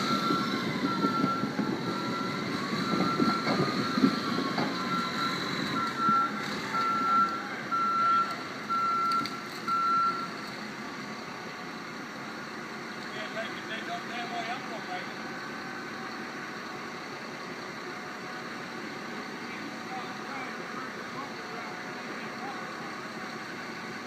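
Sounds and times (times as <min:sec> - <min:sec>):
reversing alarm beeping: 0:00.0 - 0:10.3
diesel engine rumble: 0:00.0 - 0:24.0.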